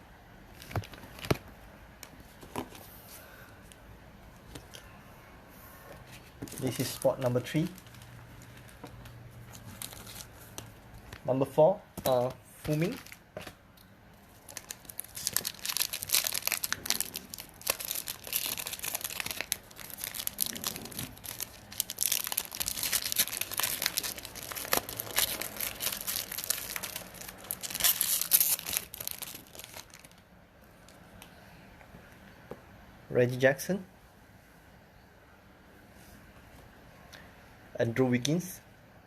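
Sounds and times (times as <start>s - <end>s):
wrapper crinkling and tearing: 6.5s - 8.8s, 9.5s - 10.4s, 12.0s - 13.6s, 14.2s - 30.2s.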